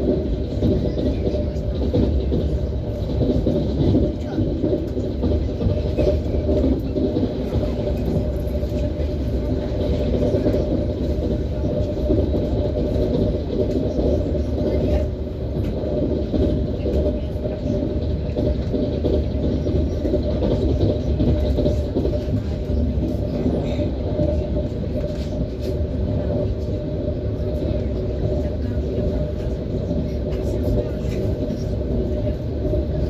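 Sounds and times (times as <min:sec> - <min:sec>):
train wheels rumbling on rails: 0:00.0 - 0:33.0.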